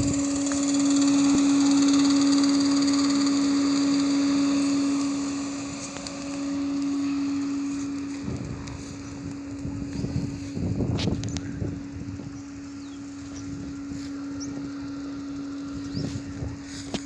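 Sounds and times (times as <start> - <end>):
machine hum: 0.0 - 17.0.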